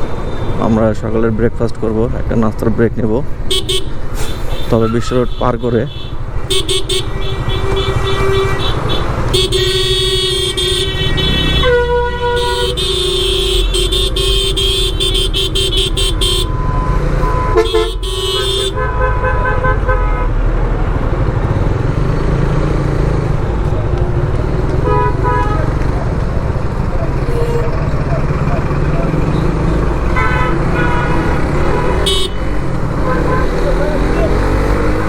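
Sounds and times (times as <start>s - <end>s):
motorcycle engine rumble: 3.2s - 35.0s
vehicle horns honking: 3.4s - 21.4s, 24.7s - 35.0s.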